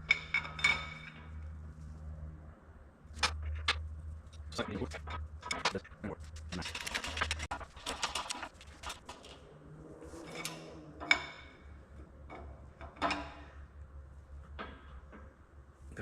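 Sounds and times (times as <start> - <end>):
metal tools clinking and scraping: 0.0 - 1.4, 10.2 - 13.6
steady low hum: 0.0 - 16.0.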